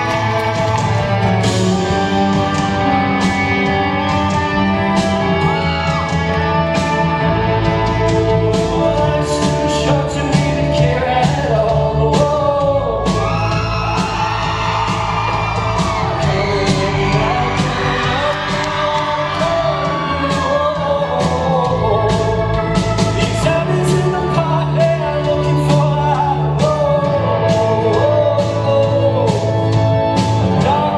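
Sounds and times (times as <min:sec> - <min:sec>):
crowd shouting: 0:00.0 - 0:01.6, 0:13.2 - 0:21.4
person singing: 0:00.0 - 0:03.2, 0:03.8 - 0:30.9
drums keeping a steady beat: 0:00.0 - 0:30.9
live rock band playing: 0:00.0 - 0:30.9.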